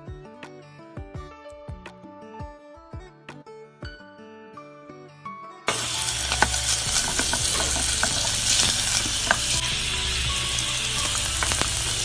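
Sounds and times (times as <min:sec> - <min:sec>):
food sizzling in a hot pan: 0:05.7 - 0:12.0.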